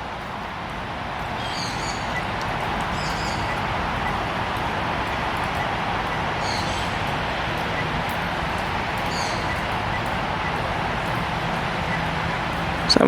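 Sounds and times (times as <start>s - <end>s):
steady rushing noise: 0.0s - 13.0s
high bird chirps: 1.4s - 4.4s, 5.2s - 7.9s, 8.6s - 12.1s.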